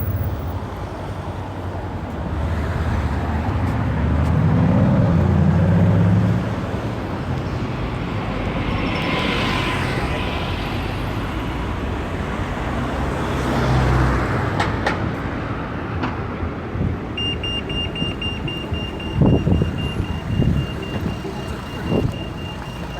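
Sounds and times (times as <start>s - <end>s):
traffic rumble: 0.0s - 22.9s
high-pitched repeating beeper: 17.2s - 22.9s.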